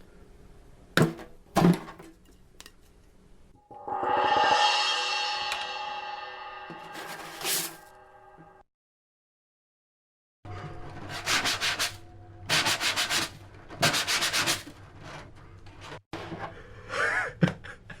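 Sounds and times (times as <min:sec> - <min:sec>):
short wavering tone: 0:03.6 - 0:07.2
low hum: 0:03.6 - 0:08.6.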